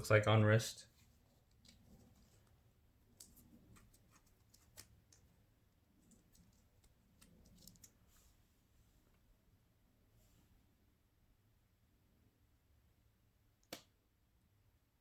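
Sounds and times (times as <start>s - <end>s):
watch clicks and rustling: 1.0s - 8.4s.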